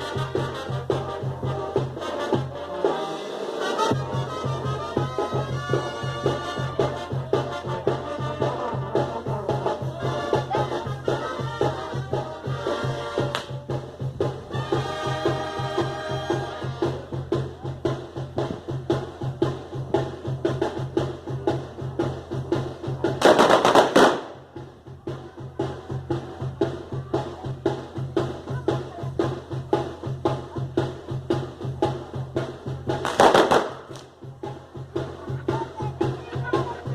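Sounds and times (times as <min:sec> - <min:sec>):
fast steady drumming: 0:00.0 - 0:03.0, 0:03.7 - 0:36.9
wind instruments playing melody: 0:00.0 - 0:13.7, 0:14.4 - 0:17.2.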